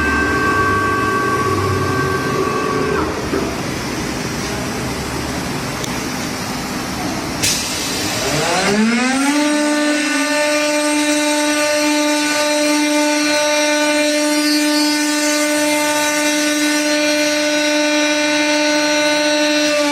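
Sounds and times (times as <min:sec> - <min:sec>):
motor whine rising in pitch: 0:00.0 - 0:03.4, 0:08.1 - 0:12.9
steady machine noise: 0:00.0 - 0:13.0.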